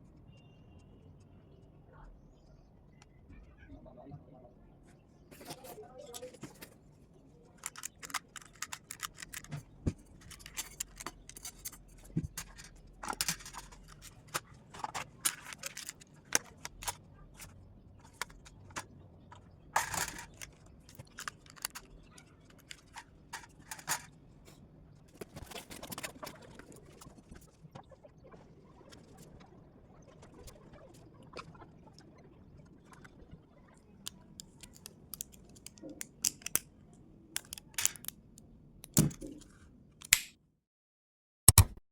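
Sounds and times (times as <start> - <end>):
hands handling plastic timer: 7.5 - 24.1, 34.1 - 36.7, 37.4 - 38.2.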